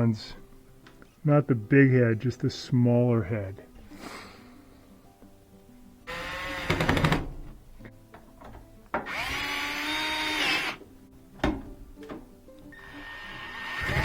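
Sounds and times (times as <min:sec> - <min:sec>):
power drill whining: 0:06.1 - 0:07.2, 0:09.1 - 0:10.8, 0:12.8 - 0:14.0.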